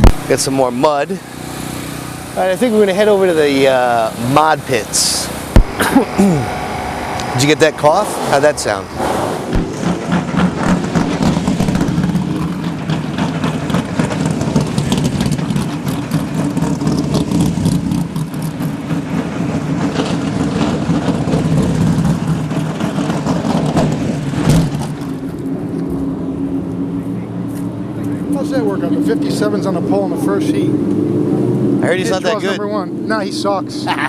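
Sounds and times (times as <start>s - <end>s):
sharp crack: 0.0s - 0.4s, 5.5s - 6.3s, 8.3s - 25.4s
race car engine idling: 0.0s - 30.9s.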